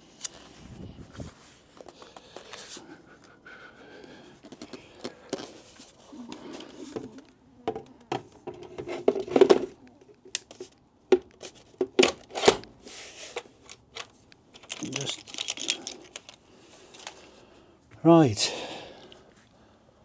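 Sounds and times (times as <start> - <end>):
handling clicks and scrapes: 4.4 - 17.3
knocks and rattles: 14.6 - 16.4.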